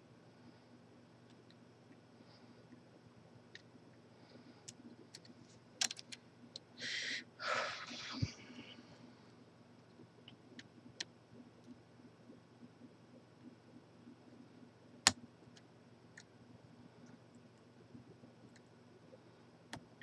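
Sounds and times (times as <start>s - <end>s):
person exhaling: 6.8s - 8.8s.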